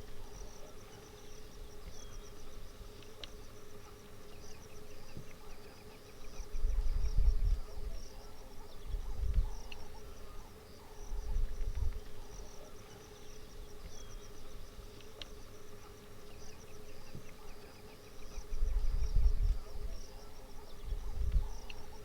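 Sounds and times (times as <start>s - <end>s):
insects chirping: 0.0s - 22.0s
small birds chirping: 0.0s - 22.0s.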